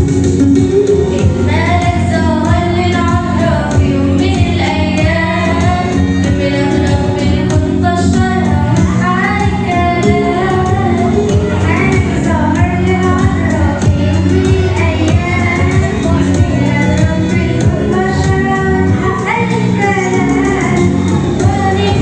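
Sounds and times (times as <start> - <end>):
instrumental backing with steady beat: 0.0 - 22.0
woman singing a hymn: 1.5 - 22.0.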